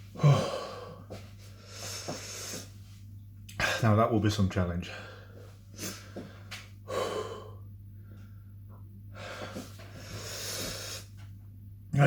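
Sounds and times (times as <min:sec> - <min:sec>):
man breathing heavily: 0:00.0 - 0:03.0, 0:04.8 - 0:11.2.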